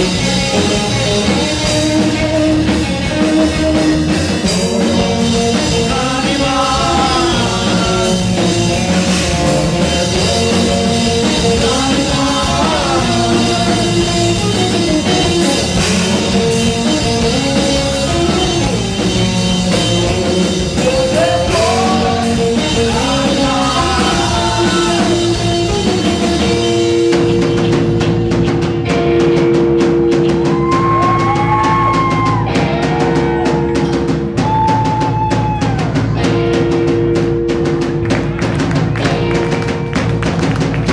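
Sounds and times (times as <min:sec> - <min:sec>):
live rock band playing: 0:00.0 - 0:40.9
person singing melody: 0:20.8 - 0:25.5.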